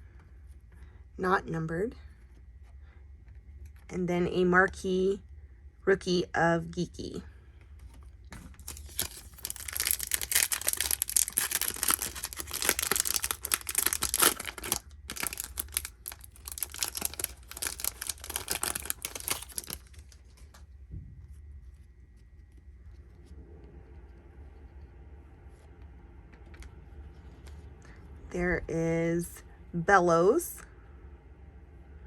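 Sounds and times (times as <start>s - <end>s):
wrapper tearing and crinkling: 8.4s - 20.4s.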